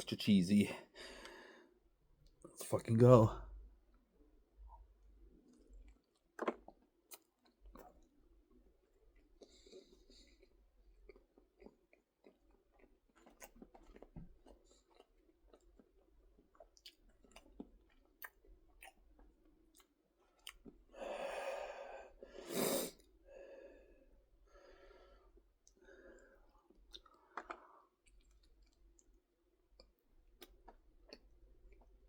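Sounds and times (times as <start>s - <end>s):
chewing crunchy cracker: 5.2s - 21.0s, 25.3s - 32.0s.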